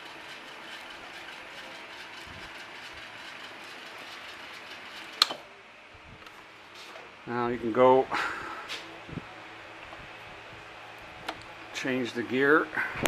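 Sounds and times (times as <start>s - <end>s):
lathe running: 0.0s - 5.3s.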